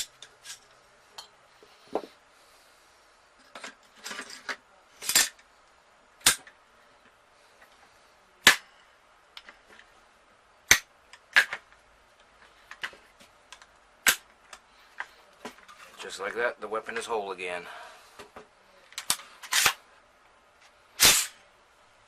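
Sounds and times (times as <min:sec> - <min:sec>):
rifle parts clacking: 0:18.9 - 0:19.8.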